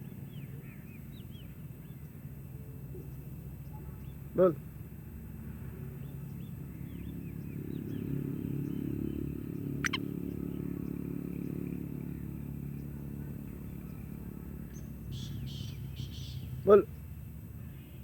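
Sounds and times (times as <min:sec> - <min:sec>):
faint bird chirps: 0:09.6 - 0:10.1.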